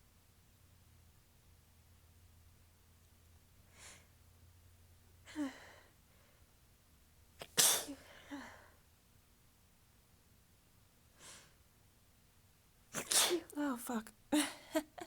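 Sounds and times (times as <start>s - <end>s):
person sneezing: 7.4s - 8.2s, 13.0s - 13.6s
faint breath: 11.1s - 11.6s.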